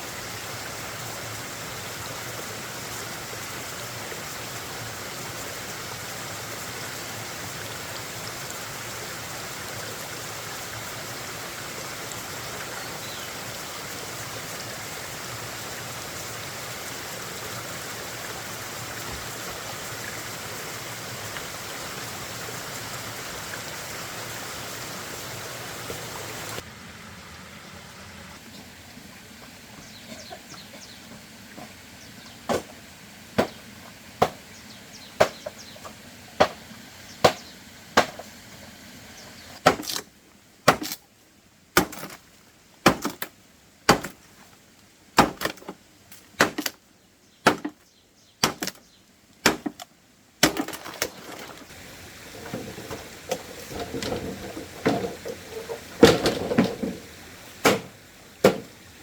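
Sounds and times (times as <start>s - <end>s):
chopping into wood: 32.5s - 32.7s, 33.4s - 33.6s, 34.2s - 34.4s, 35.2s - 35.6s, 36.4s - 36.6s, 38.0s - 38.2s, 39.6s - 40.0s, 40.7s - 41.0s, 41.8s - 42.2s, 42.8s - 43.3s, 43.9s - 44.2s, 45.2s - 45.7s, 46.4s - 46.8s, 47.4s - 47.8s, 48.4s - 48.8s, 49.4s - 51.0s, 57.6s - 58.7s
rustling: 50.4s - 58.0s.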